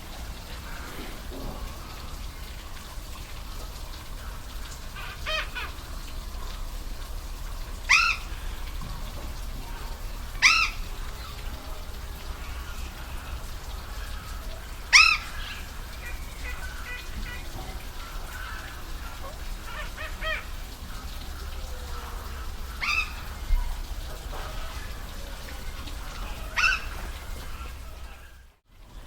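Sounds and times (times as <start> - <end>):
waterfall rushing: 0.0 - 28.6.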